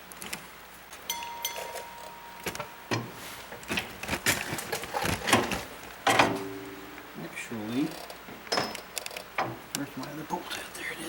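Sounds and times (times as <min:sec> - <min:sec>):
metallic clinks of tools: 0:01.0 - 0:03.1
thin ringing tone: 0:01.0 - 0:03.6.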